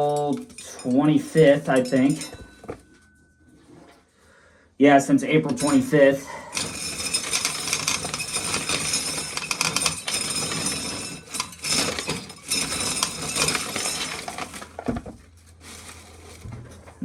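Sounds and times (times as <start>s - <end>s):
kernels rattling into a pail: 0.0s - 3.0s, 5.4s - 17.0s
corn sheller cranking: 5.5s - 17.0s.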